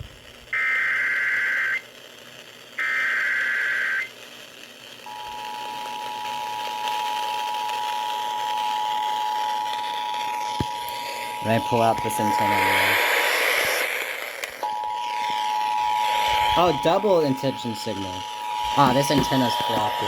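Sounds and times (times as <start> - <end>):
digital data tones: 11.4 - 13.0, 14.6 - 20.0.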